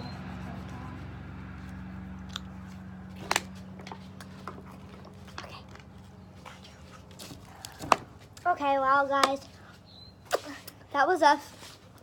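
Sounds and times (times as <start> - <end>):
chewing and mouth clicks: 1.8 - 2.8.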